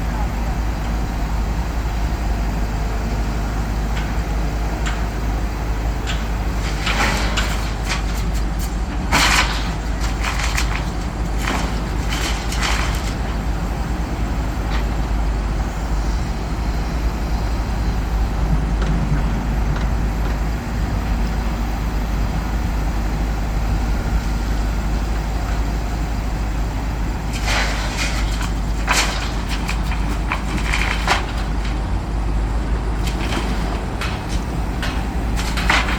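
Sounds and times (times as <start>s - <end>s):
diesel engine rumble: 0.0s - 35.9s
sharp bangs and scrapes: 27.3s - 31.9s.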